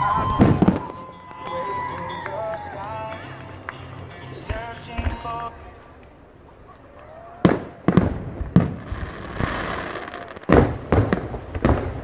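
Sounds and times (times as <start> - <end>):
fireworks booming: 0.0 - 1.2, 4.4 - 12.0
fireworks hiss: 8.0 - 11.0.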